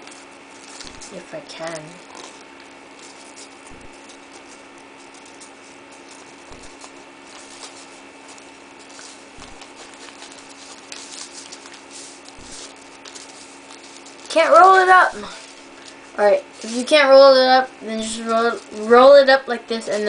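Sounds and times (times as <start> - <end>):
electrical hum: 0.0 - 20.0
paper towel rustling: 0.0 - 20.0.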